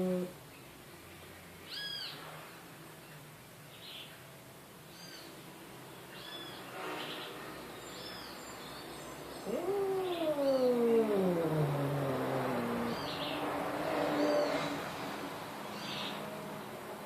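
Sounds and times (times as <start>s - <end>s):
cat yowling: 9.4s - 14.8s.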